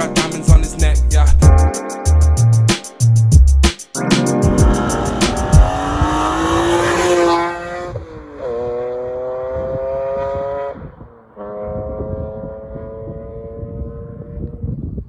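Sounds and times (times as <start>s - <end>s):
straight-six engine revving: 4.4s - 9.0s.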